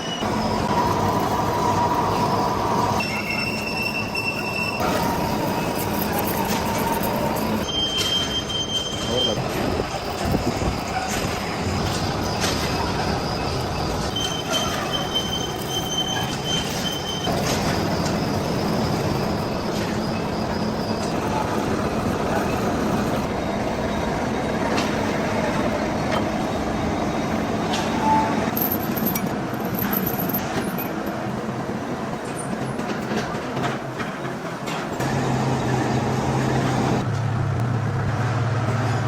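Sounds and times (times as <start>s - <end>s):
metal-on-metal squealing: 0.0s - 21.6s
heavy machinery running: 0.2s - 31.0s, 35.0s - 39.0s.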